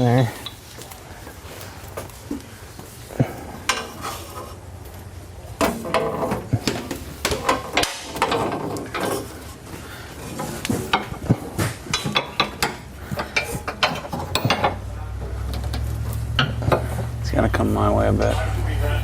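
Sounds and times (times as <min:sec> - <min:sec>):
low steady hum: 0:00.0 - 0:19.0
tools and metal parts clinking: 0:03.3 - 0:04.6, 0:05.6 - 0:09.6, 0:10.2 - 0:17.3.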